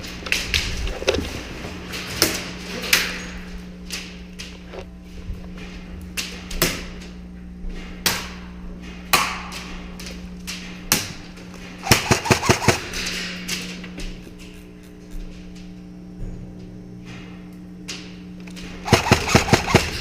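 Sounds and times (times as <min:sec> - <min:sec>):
steady low hum: 0:00.0 - 0:20.0
airsoft gun shots: 0:11.8 - 0:13.0, 0:18.8 - 0:20.0.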